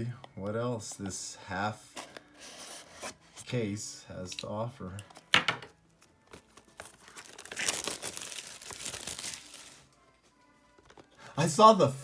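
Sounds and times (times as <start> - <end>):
plastic wrapping crinkling and tearing: 6.3 - 9.9.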